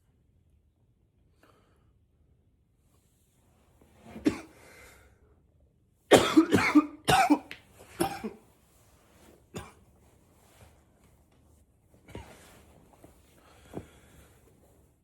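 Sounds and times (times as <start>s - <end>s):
man coughing: 6.1s - 8.4s, 9.6s - 9.8s.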